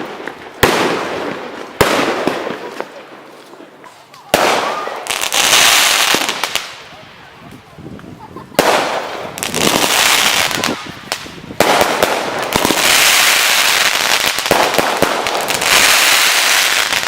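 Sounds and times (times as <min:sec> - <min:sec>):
fireworks crackling: 0:00.0 - 0:17.0
firework bang: 0:08.5 - 0:17.0.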